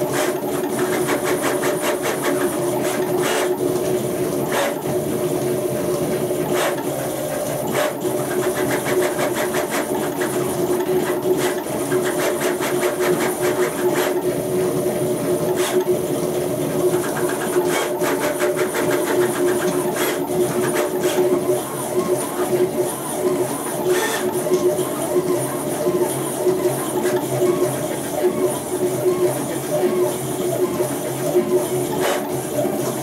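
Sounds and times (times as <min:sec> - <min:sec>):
rapid ticking of motors: 0:00.0 - 0:33.0.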